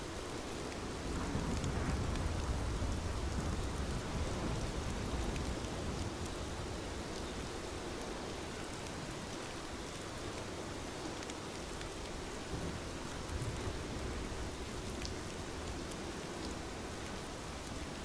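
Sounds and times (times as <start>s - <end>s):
steady rain falling: 0.0s - 18.0s
rain drop ticks: 11.1s - 12.1s, 14.6s - 18.0s.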